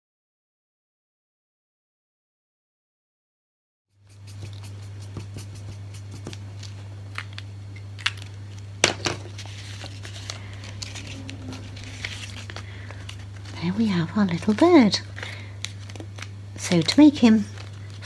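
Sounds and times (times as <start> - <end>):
steady low hum: 3.9 - 18.0
pen scratching on paper: 4.0 - 6.4.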